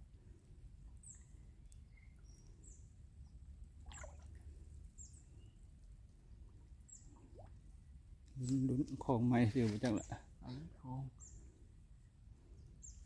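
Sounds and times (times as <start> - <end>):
brief rustle: 9.5 - 10.1.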